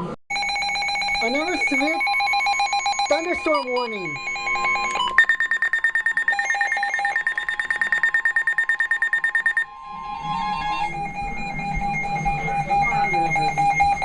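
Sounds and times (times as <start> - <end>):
stepping alert tones: 0.3 - 9.7
high pulsed beeping tone: 0.3 - 14.0.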